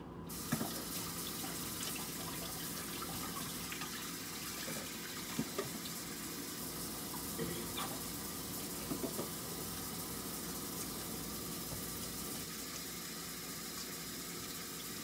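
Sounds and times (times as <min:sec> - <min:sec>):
tap water running into sink: 0:00.3 - 0:15.0
hands knocking in sink: 0:08.9 - 0:09.4.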